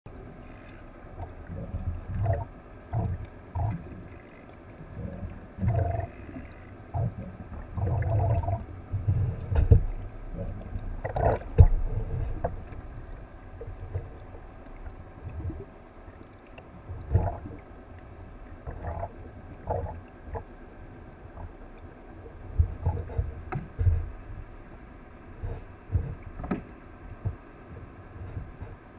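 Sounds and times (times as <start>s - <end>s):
water movement: 0.1s - 28.9s
underwater thumps and knocks: 1.2s - 4.0s, 4.9s - 15.7s, 16.9s - 17.6s, 18.6s - 20.5s, 22.5s - 24.5s, 25.4s - 28.8s.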